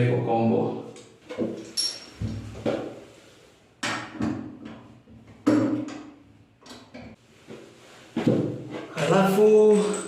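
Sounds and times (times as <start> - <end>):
metallic clinks of tools: 1.6 - 2.2, 9.5 - 10.0.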